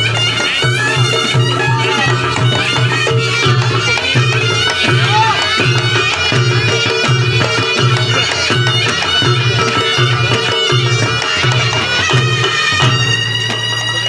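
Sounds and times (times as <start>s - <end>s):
shrill reed pipe: 0.0s - 9.0s
drums and gongs beating: 0.0s - 14.0s.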